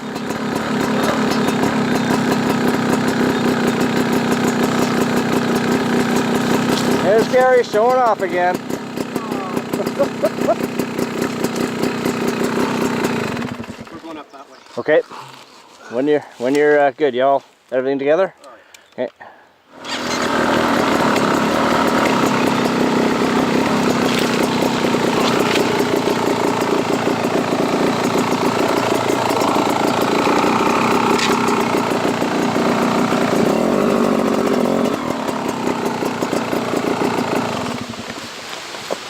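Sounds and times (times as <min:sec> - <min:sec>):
dirt bike engine running: 0:00.0 - 0:14.3, 0:19.7 - 0:38.9.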